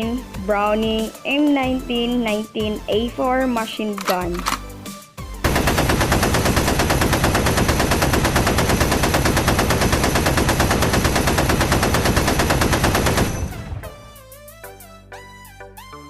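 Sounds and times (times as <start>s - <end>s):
machine gun firing: 5.4s - 14.0s.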